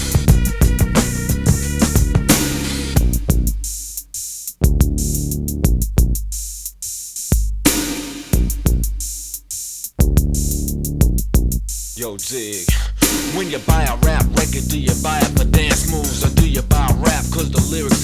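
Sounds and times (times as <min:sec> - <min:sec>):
deep bass drum notes: 0:00.0 - 0:04.0, 0:04.6 - 0:09.3, 0:10.0 - 0:18.0
drum machine beat: 0:00.0 - 0:18.0
hi-hat ticks: 0:00.0 - 0:18.0.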